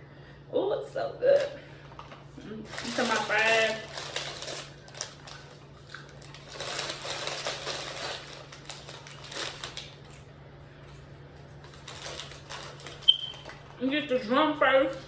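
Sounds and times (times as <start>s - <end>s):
chewing french fries: 2.6s - 13.8s.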